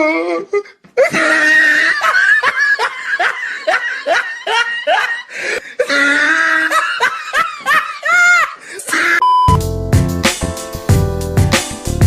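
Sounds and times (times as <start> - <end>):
person laughing: 1.0 - 9.2.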